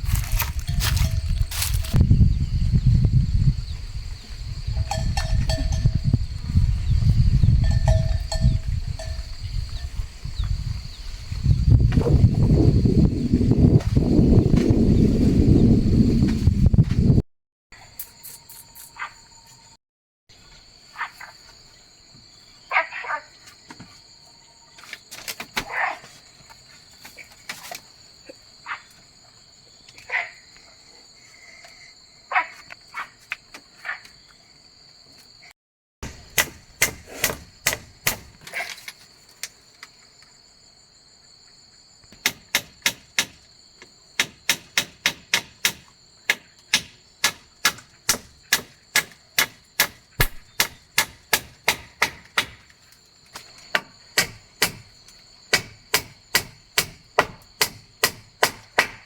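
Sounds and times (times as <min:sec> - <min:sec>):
insects chirring: 0:00.0 - 0:17.2, 0:17.8 - 0:59.0
rapid tool strikes: 0:36.0 - 0:38.4, 0:42.2 - 0:43.4, 0:44.2 - 0:52.7, 0:53.8 - 0:54.9, 0:55.5 - 0:59.0.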